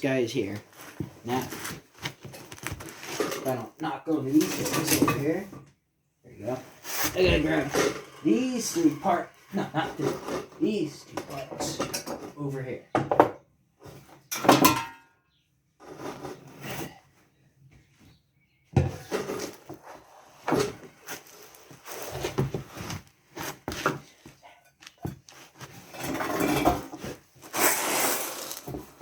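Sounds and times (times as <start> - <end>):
engine parts clattering on hard surface: 7.0 - 12.4, 25.1 - 27.6.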